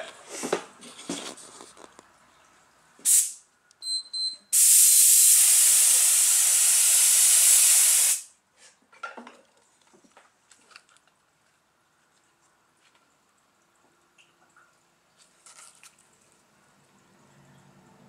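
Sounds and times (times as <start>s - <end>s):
spray hissing: 3.0s - 3.4s, 4.6s - 8.3s
spray puff: 3.0s - 3.4s, 4.5s - 8.3s.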